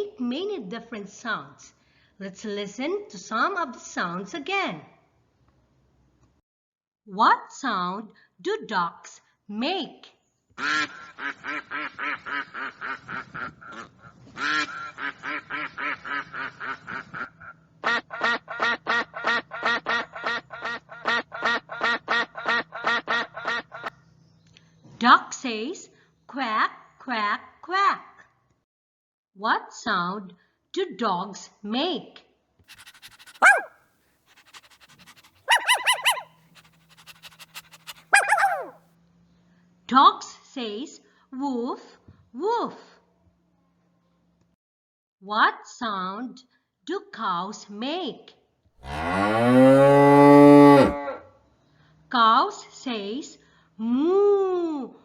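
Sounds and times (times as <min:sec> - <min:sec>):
dog barking: 0:32.7 - 0:33.7, 0:34.4 - 0:38.7
dog panting: 0:32.7 - 0:33.7, 0:34.3 - 0:38.7
duck quacking: 0:32.7 - 0:33.7, 0:34.4 - 0:36.2, 0:37.0 - 0:38.7.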